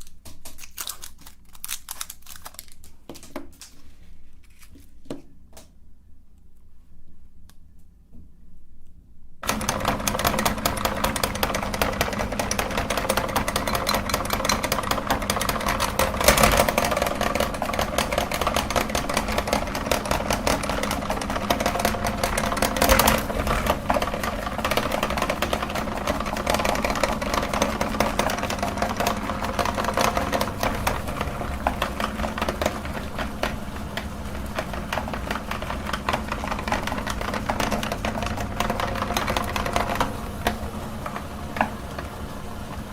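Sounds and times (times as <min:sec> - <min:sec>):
chocolate crackling in grinder: 0:00.0 - 0:03.8, 0:09.4 - 0:42.9
meat grinder motor humming: 0:09.4 - 0:42.9.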